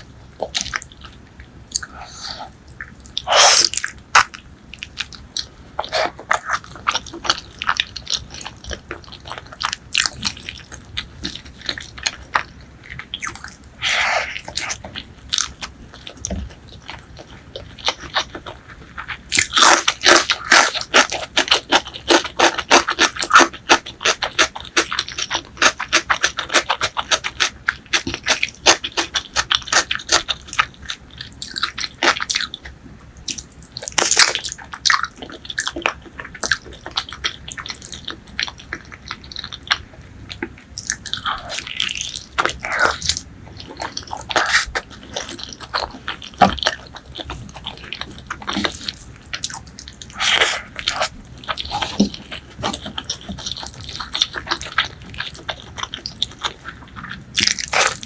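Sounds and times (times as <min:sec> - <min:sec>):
close chewing of food: 0:00.0 - 0:58.0.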